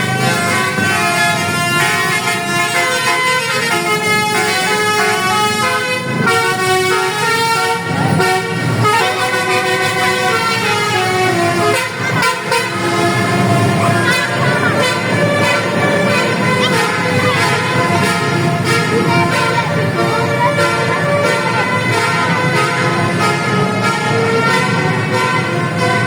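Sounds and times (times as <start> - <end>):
musical air horns playing tunes: 0.0 - 26.0.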